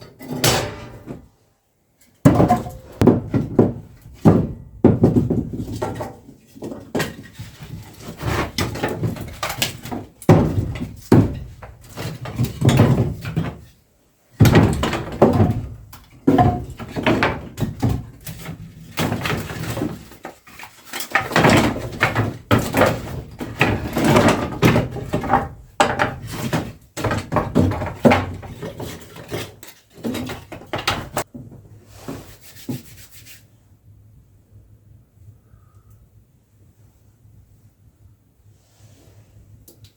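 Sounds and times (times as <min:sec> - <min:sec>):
wooden objects knocking and thudding: 0:00.0 - 0:01.3, 0:02.2 - 0:32.9.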